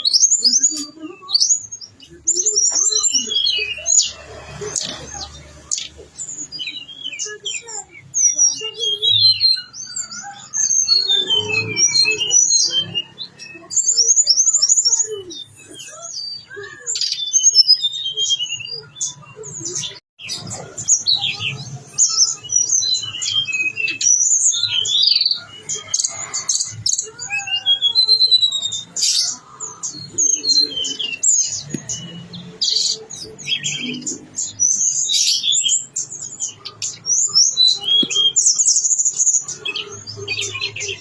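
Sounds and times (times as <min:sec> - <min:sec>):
songbird singing: 0:00.0 - 0:41.0.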